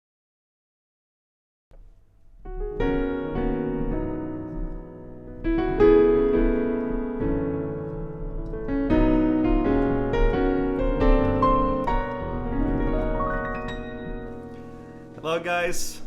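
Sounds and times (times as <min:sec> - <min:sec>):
piano chords: 0:01.7 - 0:16.0.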